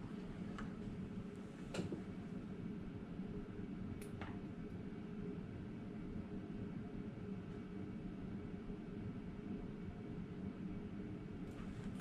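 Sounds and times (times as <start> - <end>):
low background rumble and hiss: 0.0 - 12.0.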